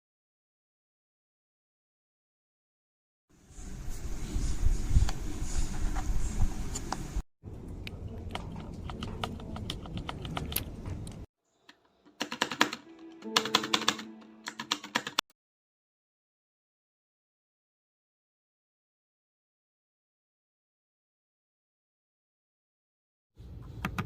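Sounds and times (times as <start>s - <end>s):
typing on mechanical keyboard: 8.4s - 10.7s, 12.2s - 15.2s.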